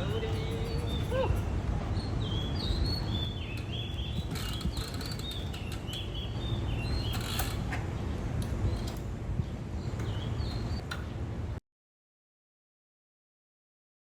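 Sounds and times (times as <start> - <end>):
small birds chirping: 0.0 - 11.2.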